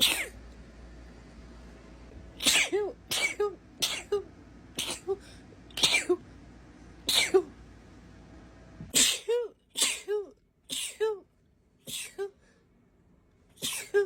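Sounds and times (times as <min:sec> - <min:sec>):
woman sneezing: 0:00.0 - 0:00.4, 0:02.4 - 0:04.2, 0:07.1 - 0:07.5, 0:08.9 - 0:11.2, 0:11.9 - 0:12.4, 0:13.6 - 0:14.0.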